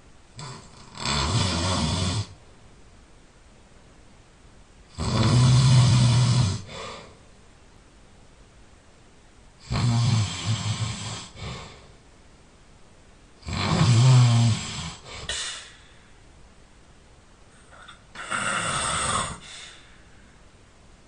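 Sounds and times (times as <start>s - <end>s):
person snoring loudly: 0.4s - 2.4s, 4.9s - 7.1s, 9.6s - 11.8s, 13.4s - 15.4s, 17.8s - 19.8s.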